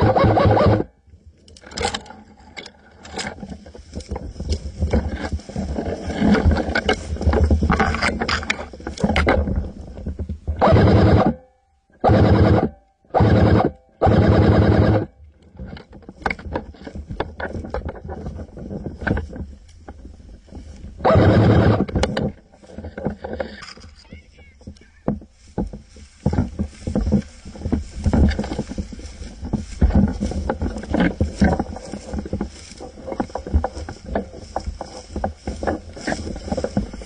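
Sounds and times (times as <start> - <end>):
airsoft rifle full-auto bursts: 0.0 - 0.8
gun handling clicks and rustling: 1.4 - 10.4, 21.9 - 37.0.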